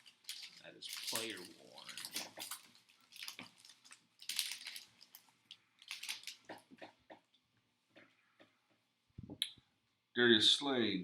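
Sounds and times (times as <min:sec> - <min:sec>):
foil wrappers crinkling: 0:00.0 - 0:06.7.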